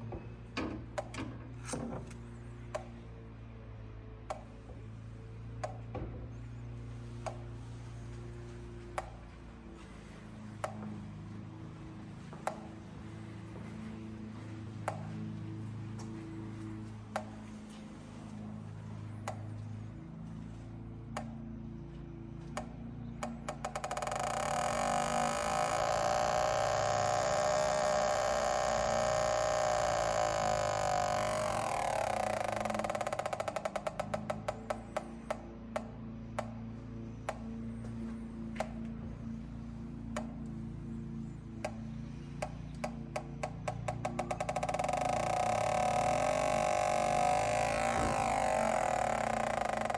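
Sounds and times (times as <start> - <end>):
gas detector buzzing tone: 23.6 - 34.1, 44.1 - 49.9.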